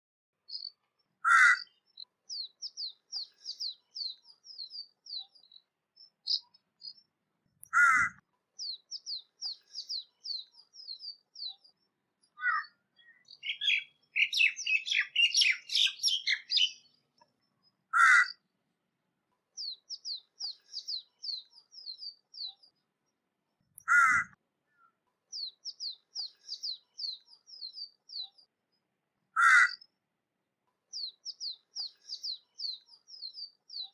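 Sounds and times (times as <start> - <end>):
small birds chirping: 0.4 - 18.7, 19.3 - 33.9
crow cawing: 1.2 - 1.7, 7.7 - 8.2, 12.4 - 12.7, 17.9 - 18.4, 23.9 - 24.4, 29.4 - 29.8.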